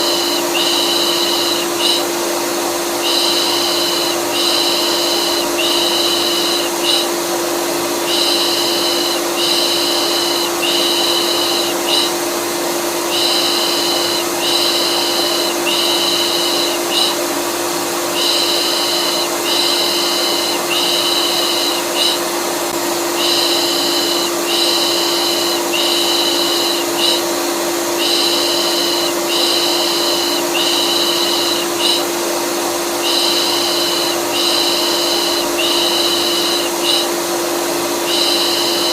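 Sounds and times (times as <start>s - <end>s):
rhythmic shushing: 0.0s - 2.1s, 3.0s - 7.1s, 8.0s - 12.3s, 13.0s - 22.3s
vacuum cleaner motor running: 0.0s - 38.9s.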